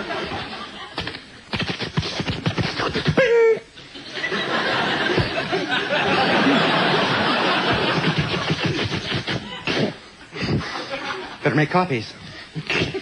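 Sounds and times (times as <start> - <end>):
studio audience laughing: 0.0 - 1.2, 3.8 - 11.6.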